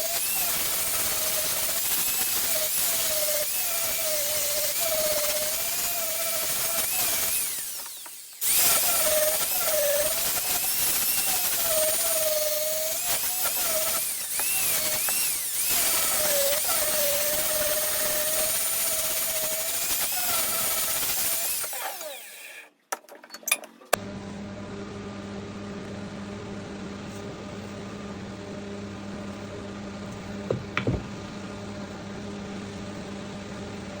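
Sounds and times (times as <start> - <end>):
power tool whining on wood: 0.0 - 22.7.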